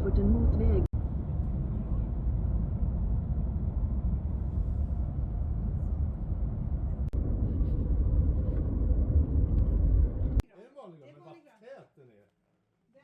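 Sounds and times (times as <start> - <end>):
car road and engine noise: 0.0 - 10.4.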